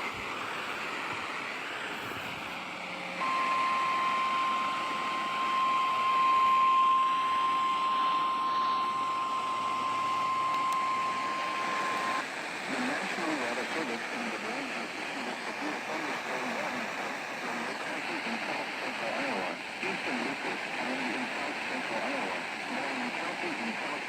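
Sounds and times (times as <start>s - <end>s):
radio hiss: 0.0s - 24.0s
steady high alarm tone: 3.2s - 12.2s.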